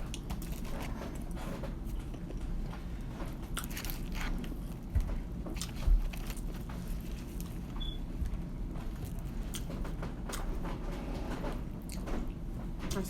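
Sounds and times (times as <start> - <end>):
crunchy biting and chewing: 0.0 - 7.8, 8.8 - 10.6.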